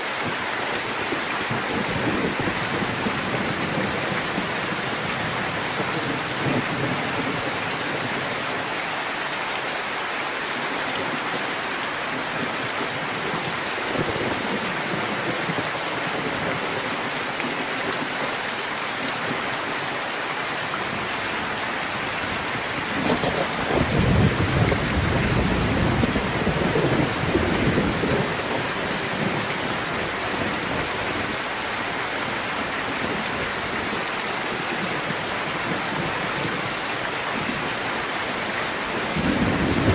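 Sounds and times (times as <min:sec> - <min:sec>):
steady rain falling: 0:00.0 - 0:39.9
thunder rumbling: 0:21.4 - 0:31.4.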